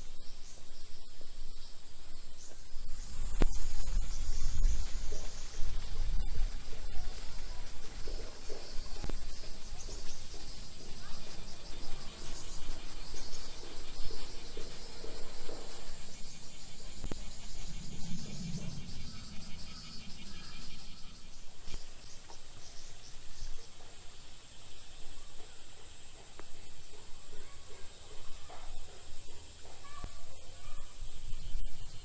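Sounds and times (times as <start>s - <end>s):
cicadas singing: 0.0s - 32.0s.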